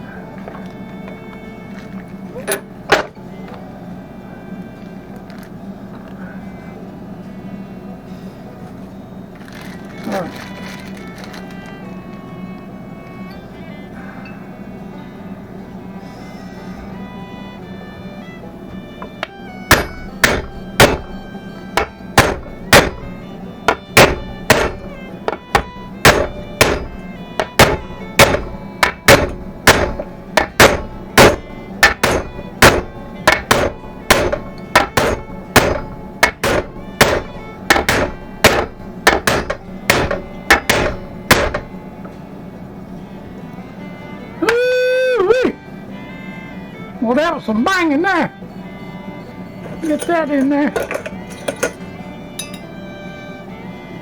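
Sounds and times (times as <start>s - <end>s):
background music: 0.0s - 5.7s, 9.4s - 54.0s
hammer striking metal: 2.4s - 3.2s, 19.0s - 42.2s, 49.7s - 52.8s.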